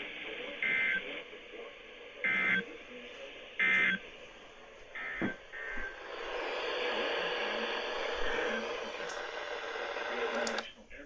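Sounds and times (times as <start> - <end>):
radio static hiss: 0.0 - 11.0
click: 8.5 - 9.4, 10.0 - 10.7.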